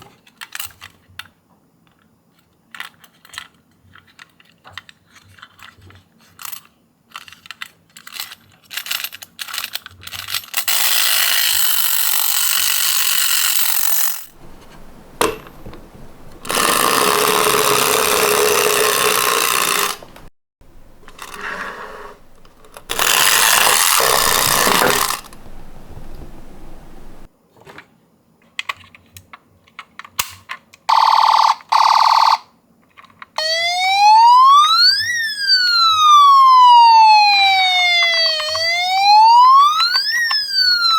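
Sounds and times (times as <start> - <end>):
clicks and taps handling toy car: 0.0 - 10.7, 27.6 - 30.9, 32.8 - 33.4
toy car wheels rattling: 6.3 - 27.3.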